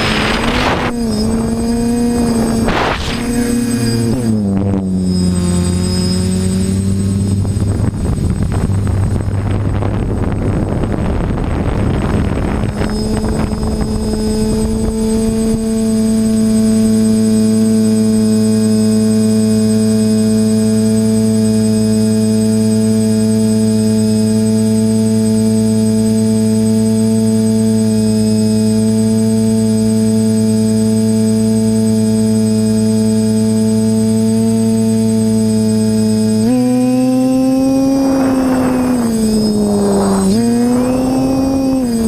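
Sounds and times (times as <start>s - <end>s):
rushing noise: 0.0s - 4.5s, 37.4s - 42.0s
electronic drone chord: 0.0s - 7.6s, 33.8s - 42.0s.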